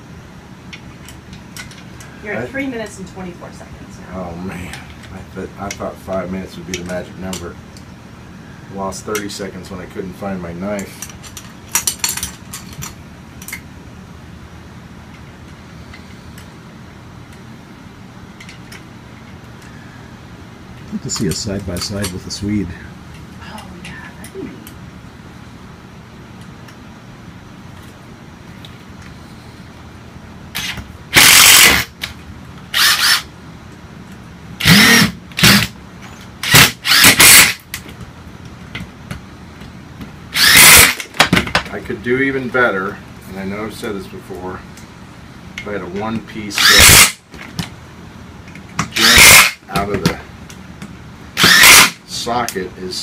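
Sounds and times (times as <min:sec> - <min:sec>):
power driver whirring: 0:30.6 - 0:33.3, 0:34.6 - 0:35.8, 0:36.4 - 0:37.7, 0:40.3 - 0:41.2, 0:46.5 - 0:47.2, 0:48.8 - 0:49.6, 0:51.4 - 0:52.0.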